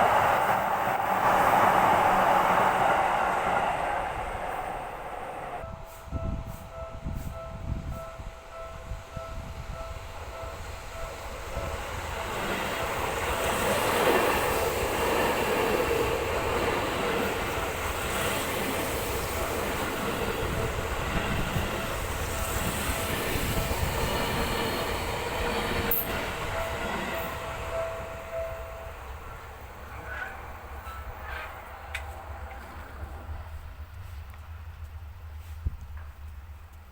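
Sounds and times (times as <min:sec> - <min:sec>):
electric train passing: 0:00.0 - 0:36.9
level crossing warning bell: 0:05.6 - 0:30.0.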